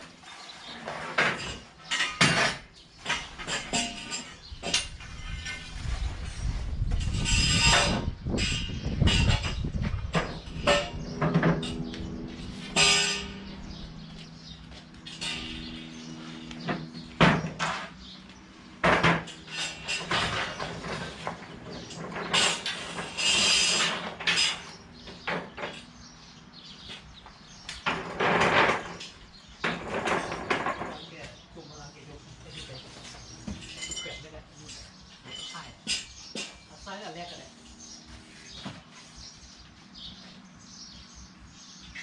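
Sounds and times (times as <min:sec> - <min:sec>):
metal objects clanking: 0:00.3 - 0:13.8, 0:15.0 - 0:18.0, 0:18.8 - 0:26.0, 0:27.8 - 0:31.1, 0:32.5 - 0:36.9.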